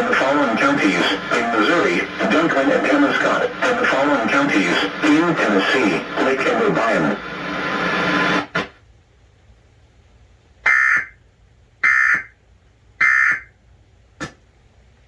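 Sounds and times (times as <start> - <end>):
loud broadcast audio: 0.0 - 8.8.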